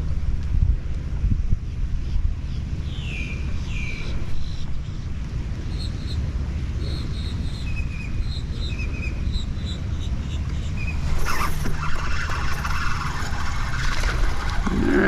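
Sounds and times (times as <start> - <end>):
wind buffeting microphone: 0.0 - 9.2.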